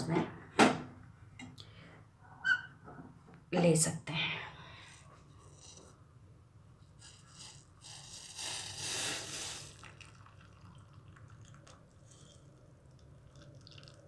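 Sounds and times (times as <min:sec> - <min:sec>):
tea pouring into a cup: 0:07.0 - 0:14.0.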